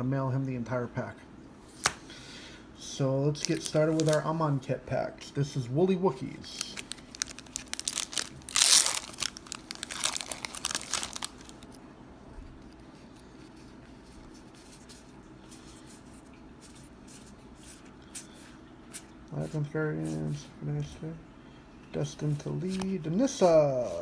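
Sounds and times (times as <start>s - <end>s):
foil wrapper tearing and crinkling: 3.4s - 4.3s, 6.5s - 11.7s.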